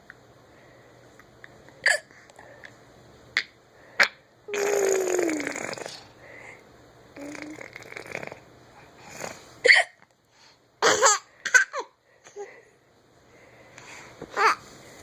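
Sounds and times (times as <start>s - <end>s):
woman hiccuping: 9.7s - 10.0s.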